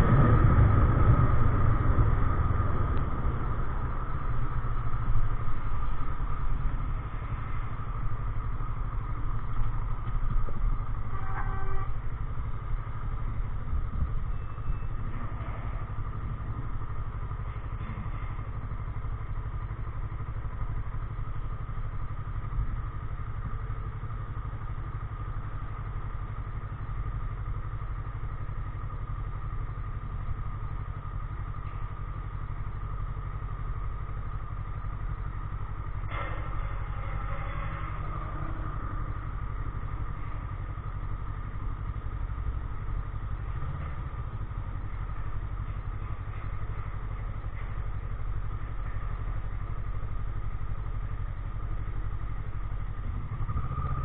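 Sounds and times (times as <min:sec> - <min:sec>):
motorcycle engine running at low revs: 0:00.0 - 0:54.0
short beep: 0:14.2 - 0:15.1.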